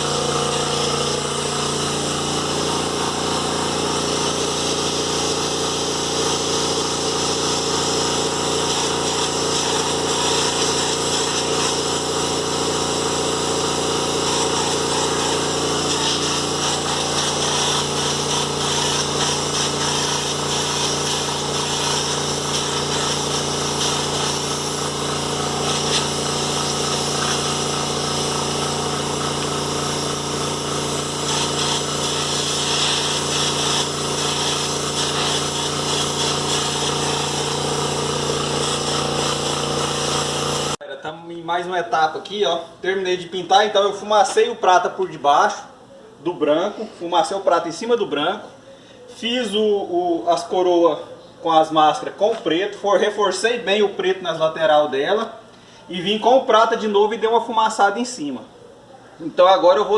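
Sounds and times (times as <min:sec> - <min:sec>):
electric air compressor humming: 0:00.0 - 0:40.8.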